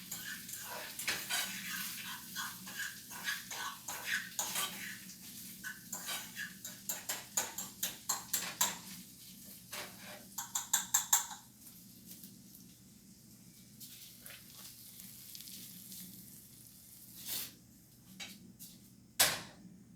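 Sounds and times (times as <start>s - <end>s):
utensils clinking against dishes: 0.0s - 5.0s, 5.6s - 9.0s, 9.7s - 11.5s.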